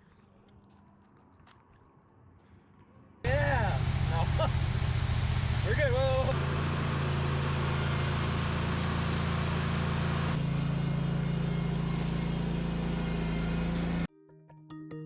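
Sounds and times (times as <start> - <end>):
engine humming: 3.2 - 14.1.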